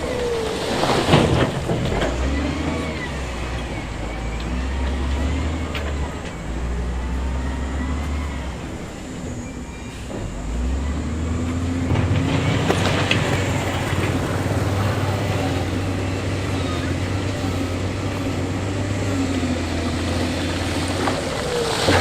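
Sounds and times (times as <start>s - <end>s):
clatter: 0.0s - 6.6s, 11.4s - 18.3s
diesel engine under load: 0.0s - 22.0s.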